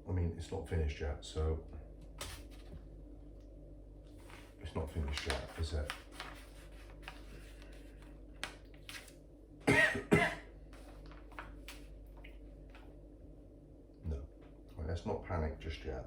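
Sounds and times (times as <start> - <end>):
man coughing: 9.7 - 10.5.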